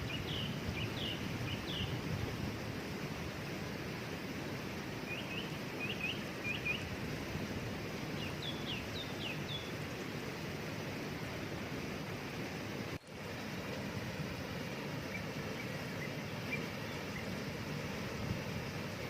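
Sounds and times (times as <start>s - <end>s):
waterfall rushing: 0.0s - 19.0s
small bird chirping: 8.2s - 9.7s.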